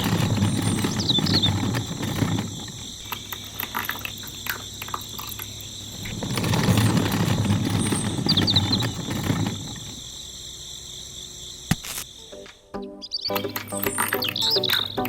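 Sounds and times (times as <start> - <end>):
high-pitched insect drone: 13.1 - 15.0.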